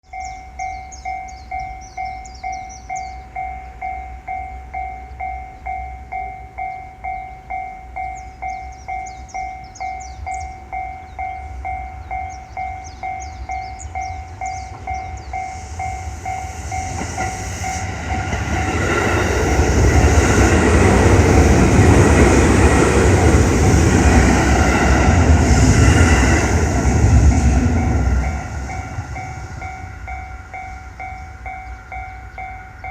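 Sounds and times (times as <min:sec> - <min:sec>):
level crossing bell ringing: 0:00.1 - 0:17.0, 0:27.4 - 0:32.9
electric train running noise: 0:00.1 - 0:32.9.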